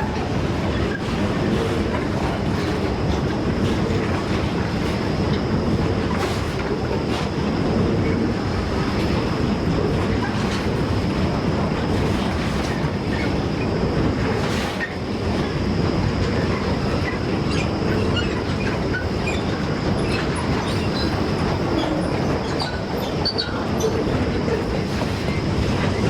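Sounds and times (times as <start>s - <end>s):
freight train wheels rumbling: 0.0s - 26.0s
high wheel squeals: 16.6s - 24.5s.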